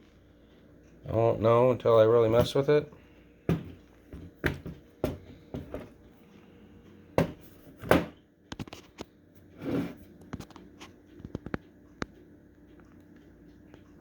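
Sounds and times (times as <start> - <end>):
knocks on stereo unit: 7.2 - 8.2.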